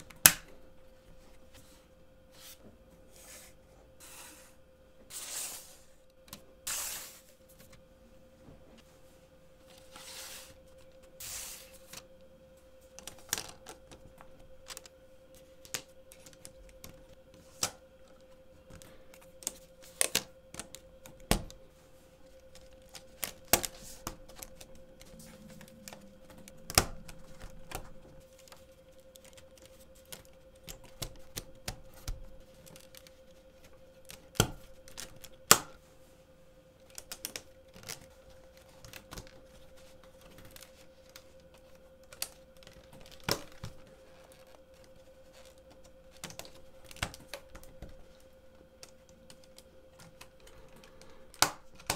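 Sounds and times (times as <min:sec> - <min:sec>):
faint steady hum: 0:00.0 - 0:51.9.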